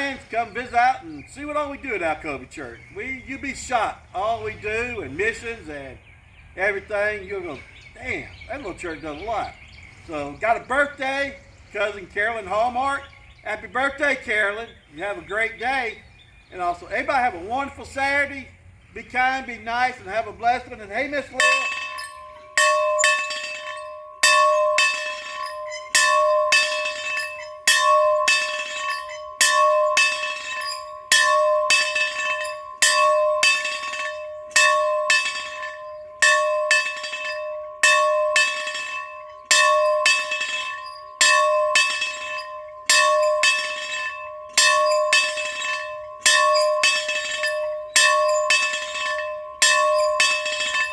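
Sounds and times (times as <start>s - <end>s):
church bell ringing: 19.4s - 50.9s.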